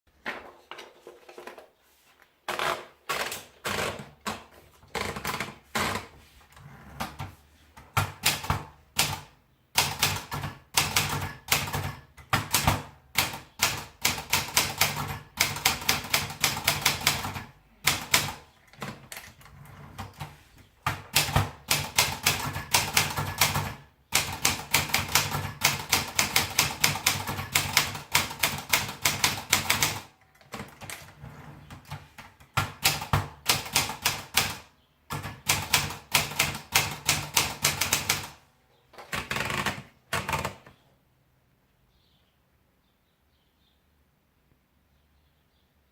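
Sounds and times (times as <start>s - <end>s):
manual typewriter typing: 2.5s - 6.1s, 7.9s - 38.4s, 39.0s - 40.7s.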